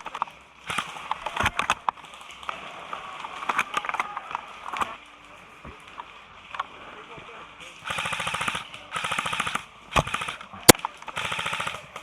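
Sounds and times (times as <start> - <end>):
airsoft guns firing: 0.0 - 4.9, 7.8 - 12.0.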